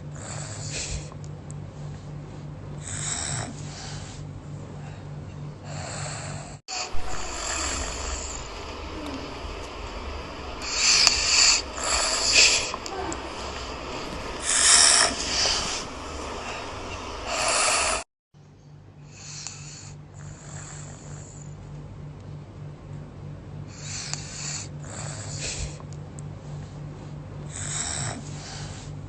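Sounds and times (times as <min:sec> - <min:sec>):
toddler snoring: 0:00.0 - 0:01.1, 0:02.8 - 0:04.2, 0:05.6 - 0:18.1, 0:19.0 - 0:21.6, 0:23.7 - 0:25.8, 0:27.5 - 0:28.9.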